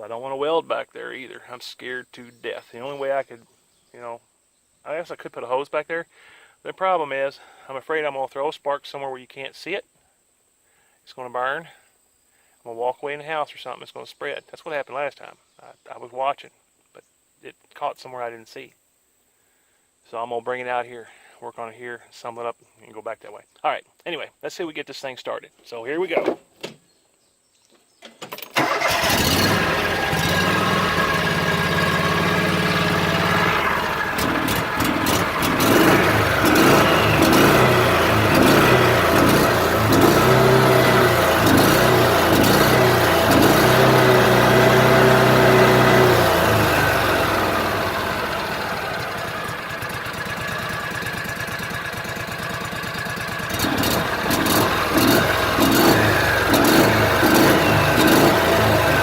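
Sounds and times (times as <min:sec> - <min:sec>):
utility vehicle engine running: 0:28.6 - 0:59.0.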